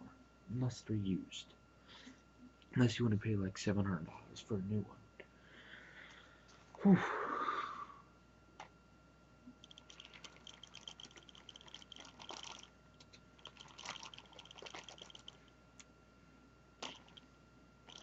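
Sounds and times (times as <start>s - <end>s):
small hard parts clicking and rattling: 9.6s - 15.5s, 16.8s - 17.2s.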